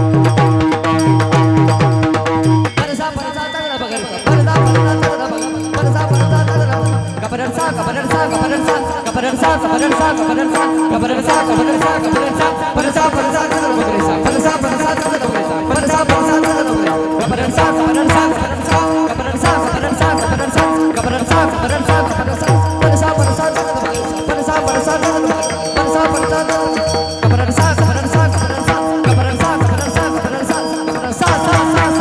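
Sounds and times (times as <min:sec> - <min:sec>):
drum beat: 0:15.7 - 0:30.2.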